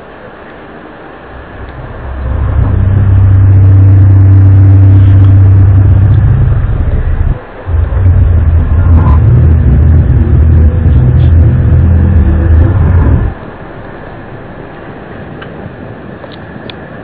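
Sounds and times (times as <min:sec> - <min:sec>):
loud low droning hum: 0:00.0 - 0:17.0.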